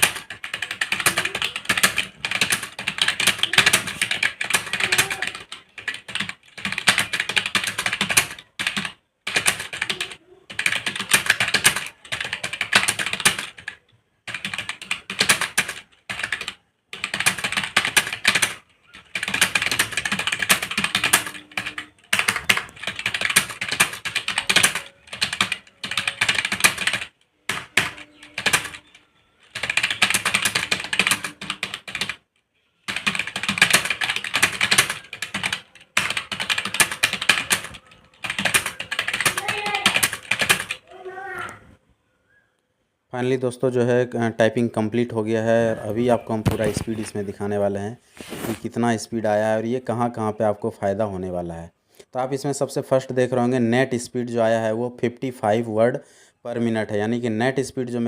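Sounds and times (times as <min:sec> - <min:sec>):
fast typing on keyboard: 0:00.0 - 0:32.2, 0:32.9 - 0:40.8.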